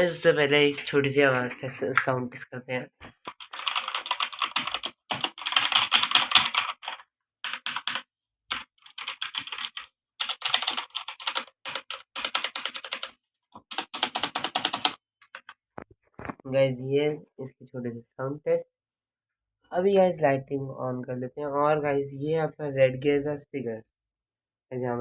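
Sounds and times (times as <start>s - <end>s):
mechanical keyboard typing: 3.2s - 15.5s.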